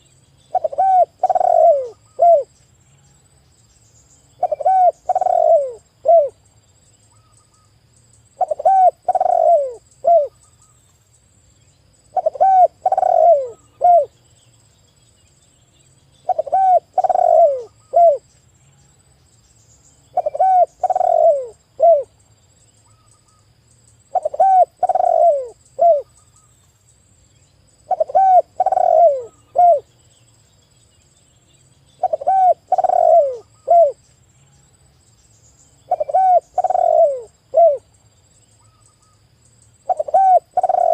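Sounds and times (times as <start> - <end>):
dove cooing: 0.0 - 2.5, 4.4 - 6.4, 8.4 - 10.4, 12.1 - 14.2, 16.2 - 18.3, 20.1 - 22.1, 24.1 - 26.1, 27.9 - 29.9, 32.0 - 34.0, 35.9 - 37.9, 39.8 - 40.9.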